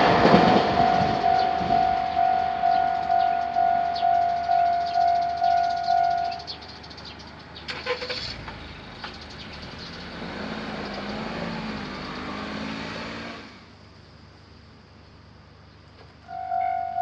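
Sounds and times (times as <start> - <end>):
vehicle driving past: 7.9 - 13.7.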